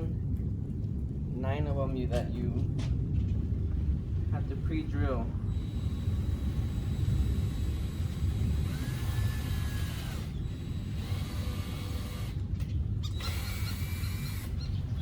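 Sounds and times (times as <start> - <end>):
low rumble: 0.0 - 15.0
cordless drill whining: 5.5 - 14.7.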